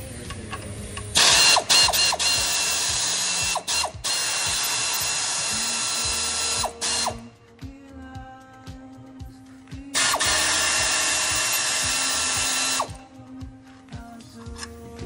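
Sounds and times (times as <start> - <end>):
power tool whining: 0.0 - 7.4, 10.0 - 13.2.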